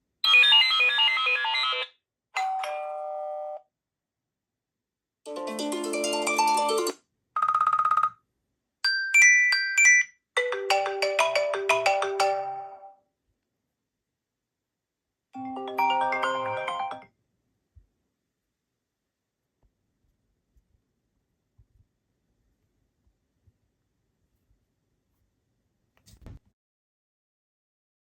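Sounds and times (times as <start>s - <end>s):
chime-like ringtone notes: 15.4s - 17.0s.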